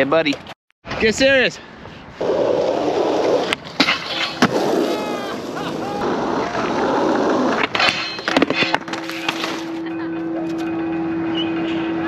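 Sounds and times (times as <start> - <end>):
skateboard wheels rolling on concrete: 2.1 - 9.8.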